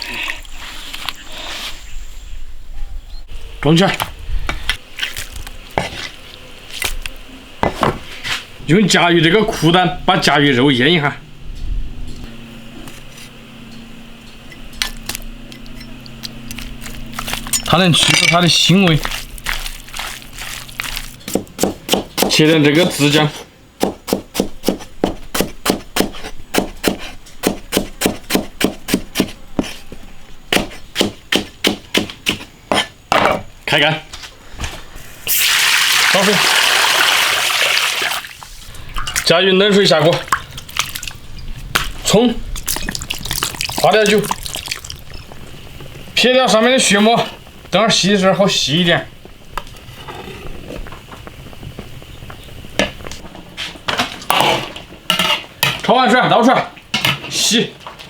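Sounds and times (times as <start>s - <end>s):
knife chopping on cutting board: 21.3s - 22.6s, 23.8s - 29.8s, 30.5s - 32.9s
water simmering in a wok: 35.2s - 39.2s.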